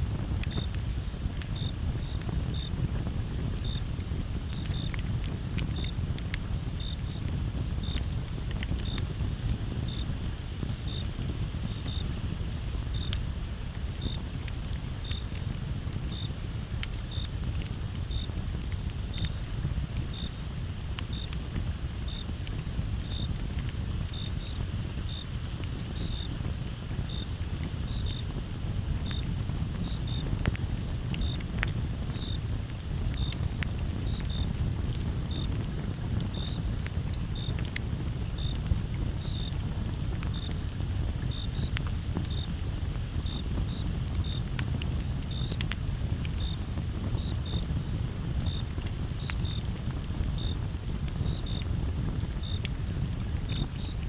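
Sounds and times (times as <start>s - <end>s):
campfire crackling and popping: 0.0s - 54.0s
cricket chirping: 0.1s - 54.0s
high insect trill: 40.3s - 49.7s.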